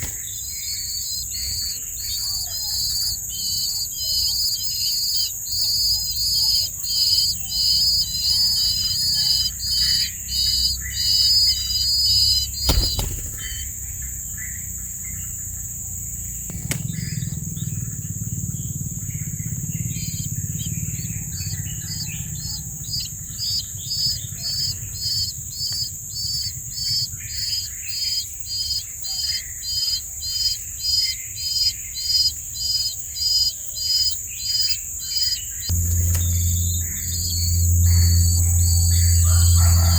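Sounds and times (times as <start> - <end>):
high insect drone: 0.0 - 39.9
insect chirping: 0.0 - 39.9
sharp knock: 12.7 - 13.5.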